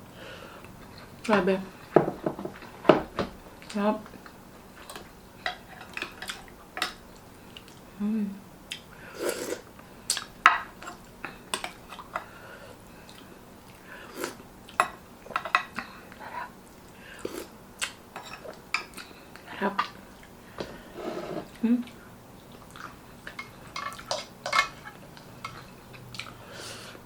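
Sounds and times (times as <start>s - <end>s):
person humming: 8.0s - 8.4s.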